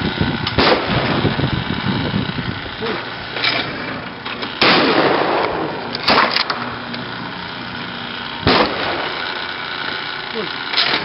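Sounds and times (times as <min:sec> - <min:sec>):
shotgun shot: 0:00.6 - 0:01.2, 0:04.6 - 0:06.4, 0:08.4 - 0:09.2.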